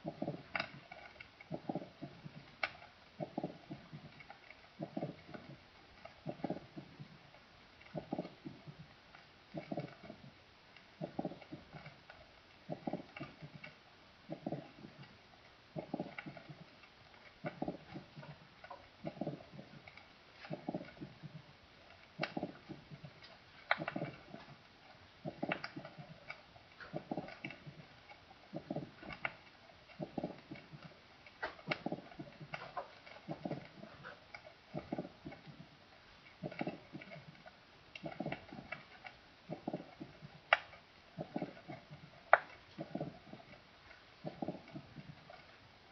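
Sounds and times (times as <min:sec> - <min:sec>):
sharp clicks: 0:10.8 - 0:45.6.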